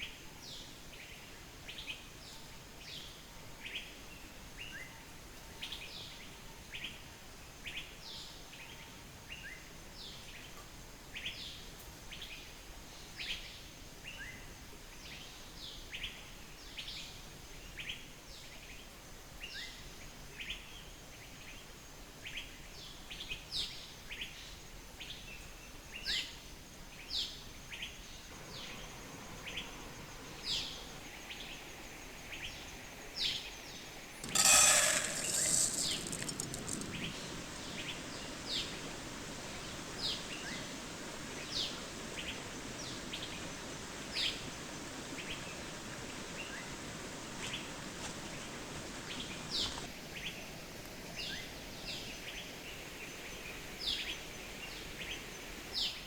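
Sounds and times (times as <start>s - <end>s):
rushing water: 36.6s - 49.9s.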